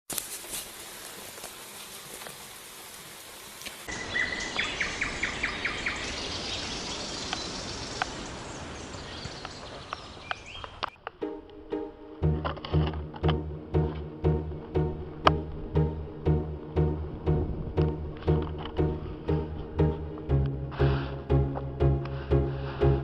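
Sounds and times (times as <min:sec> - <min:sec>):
steady outdoor hiss: 0:00.1 - 0:23.0
birds chirping: 0:03.9 - 0:11.0.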